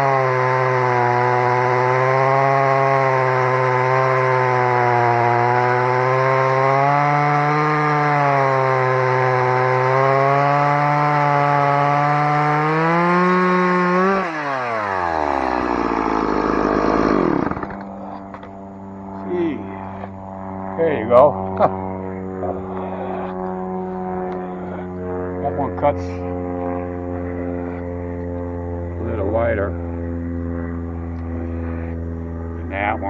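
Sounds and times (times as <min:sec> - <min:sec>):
chainsaw cutting through trunk: 0:00.0 - 0:18.5.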